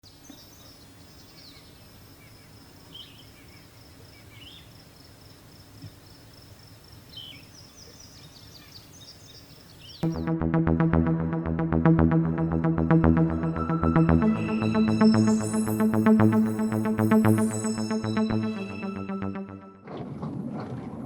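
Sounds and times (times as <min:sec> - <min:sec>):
electronic music with steady beat: 0:10.0 - 0:19.8
thin high trill: 0:10.0 - 0:19.8.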